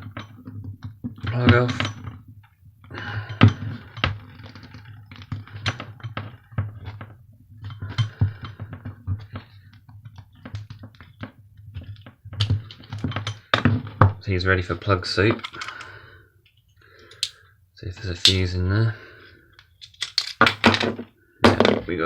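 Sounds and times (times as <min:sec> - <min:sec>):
clicks and knocks of handling: 0:15.2 - 0:17.4, 0:18.0 - 0:18.6, 0:19.6 - 0:21.8
cutters snipping cable: 0:18.2 - 0:18.5.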